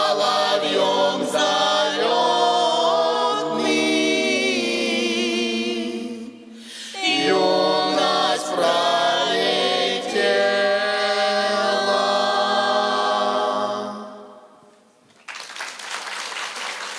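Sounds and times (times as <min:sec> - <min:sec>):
choir singing a cappella: 0:00.0 - 0:14.7
audience applause: 0:15.1 - 0:16.9.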